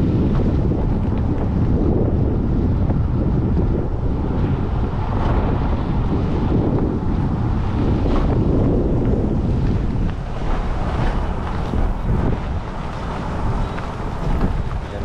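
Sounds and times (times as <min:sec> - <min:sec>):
wind noise on microphone: 0:00.0 - 0:15.0.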